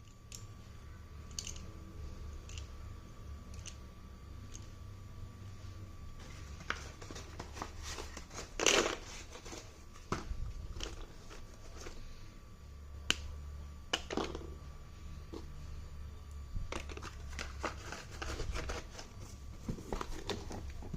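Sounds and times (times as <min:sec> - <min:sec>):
low steady hum: 0:00.0 - 0:20.9
packaging rustling: 0:06.2 - 0:12.0, 0:16.8 - 0:20.9.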